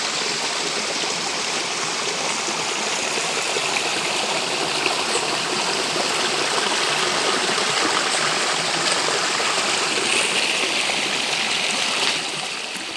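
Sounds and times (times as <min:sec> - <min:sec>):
stream water rushing and trickling: 0:00.0 - 0:12.9.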